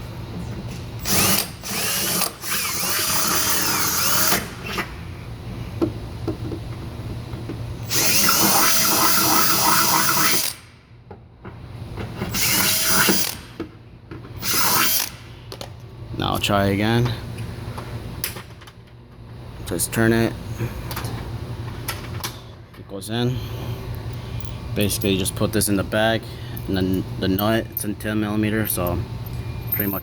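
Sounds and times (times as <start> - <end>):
power drill whine: 1.0 - 4.8, 7.9 - 10.6, 12.3 - 13.4.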